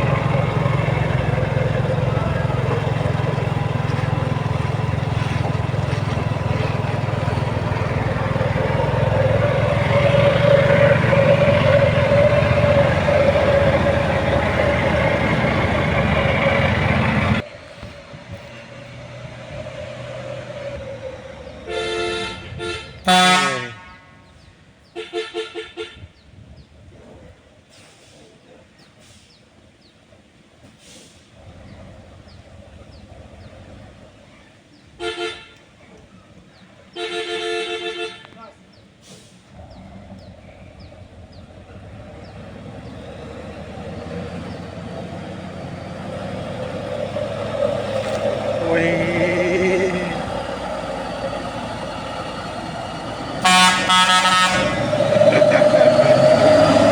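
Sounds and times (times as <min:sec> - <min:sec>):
vehicle engine running: 0:00.0 - 0:24.4, 0:39.5 - 0:56.9
vehicle horns honking: 0:21.6 - 0:24.3, 0:24.9 - 0:26.2, 0:34.9 - 0:35.7, 0:36.9 - 0:38.5, 0:53.4 - 0:56.8.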